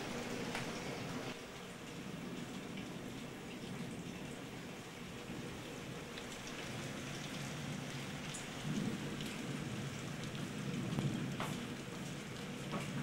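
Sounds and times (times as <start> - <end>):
sharp raindrops: 0.0 - 13.0
torrential rain pouring: 0.0 - 13.0
distant thunder rumble: 8.6 - 11.8.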